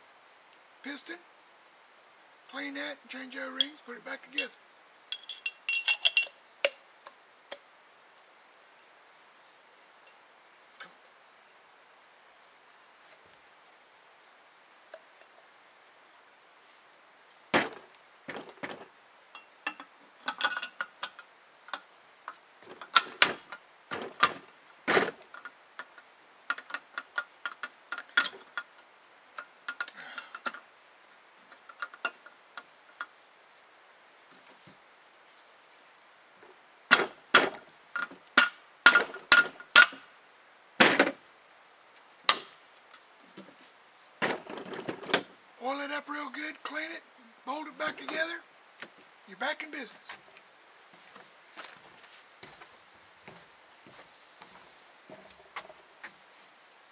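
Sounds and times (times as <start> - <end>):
faint high-pitched whine: 0.0 - 56.9
metal parts clicking and clinking: 5.1 - 6.4, 19.4 - 21.3.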